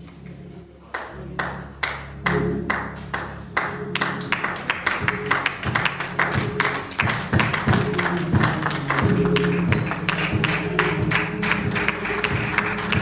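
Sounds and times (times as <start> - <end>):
keyboard and bass chords: 0.0 - 13.0
claps and percussion beat: 1.0 - 13.0.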